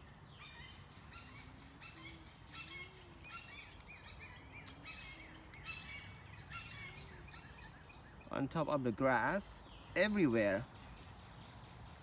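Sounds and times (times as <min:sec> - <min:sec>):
birds chirping: 0:00.0 - 0:12.0.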